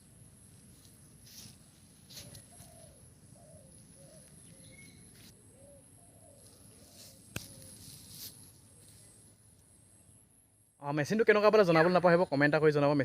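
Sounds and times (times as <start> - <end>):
faint bird calls: 2.1 - 9.3.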